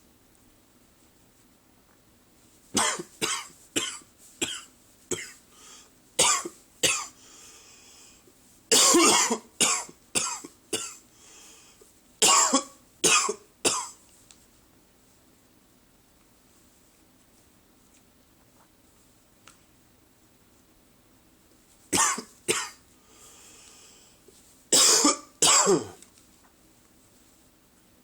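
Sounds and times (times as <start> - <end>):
man coughing: 2.8 - 5.4, 6.2 - 7.1, 8.7 - 11.0, 12.2 - 14.0, 22.0 - 22.8, 24.8 - 26.0
drawn-in breaths: 7.2 - 8.3, 11.1 - 11.9, 23.0 - 24.2.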